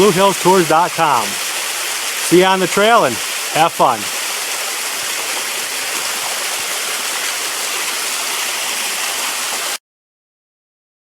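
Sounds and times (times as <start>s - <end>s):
waterfall splashing over rock: 0.0s - 9.8s.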